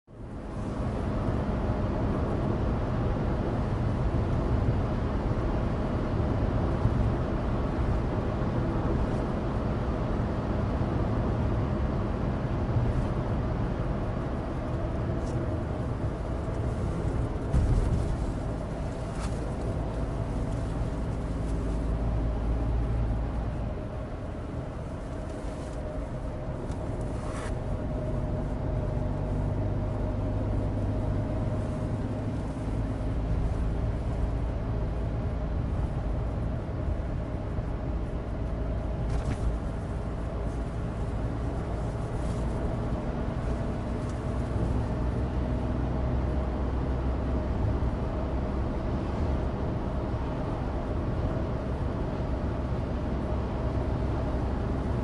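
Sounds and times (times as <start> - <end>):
road and tyre noise: 0.0 - 55.0
thump: 17.5 - 18.0.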